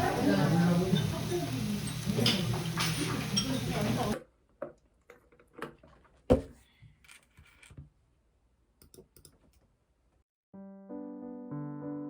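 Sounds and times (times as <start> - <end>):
soft electric piano music: 10.6 - 12.0.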